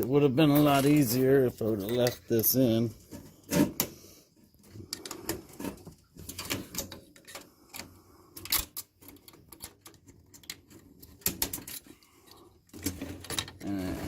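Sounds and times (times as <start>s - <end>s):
computer parts clicking and knocking: 6.2s - 12.0s, 12.7s - 13.7s.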